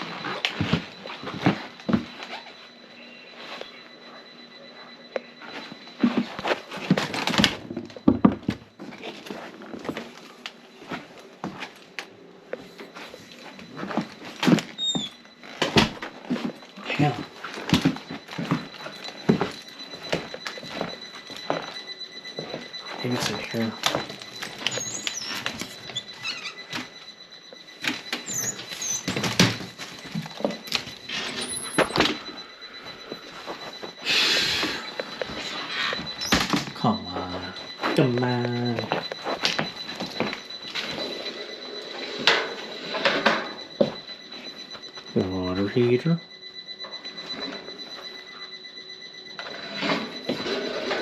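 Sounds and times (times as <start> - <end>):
faint hum: 0.0 - 51.0.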